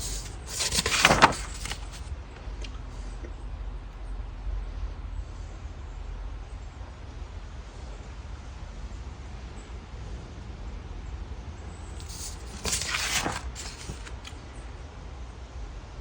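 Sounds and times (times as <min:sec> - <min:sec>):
brief rustle or scrape: 0:12.0 - 0:14.4.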